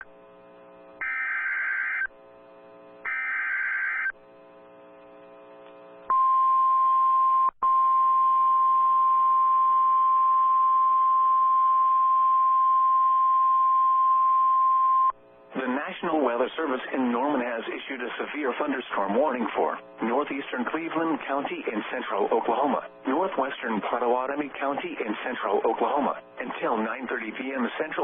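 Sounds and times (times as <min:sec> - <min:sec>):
faint low radio hum: 0:00.0 - 0:06.4, 0:07.7 - 0:28.0
screechy digital data bursts: 0:01.0 - 0:02.1, 0:03.1 - 0:04.1
steady warning alarm tone: 0:01.0 - 0:02.1, 0:03.0 - 0:04.2.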